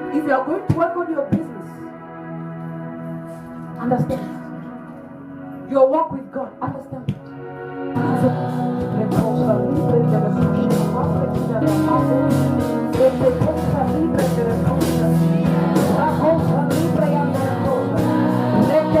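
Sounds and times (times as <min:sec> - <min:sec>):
song with singing voice: 0:06.9 - 0:19.0.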